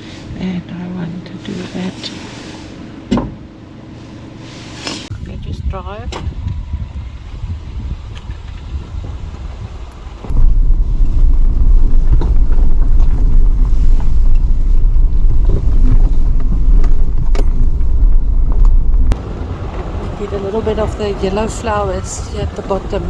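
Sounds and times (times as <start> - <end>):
vehicle rumbling on dirt road: 0.0 - 23.0.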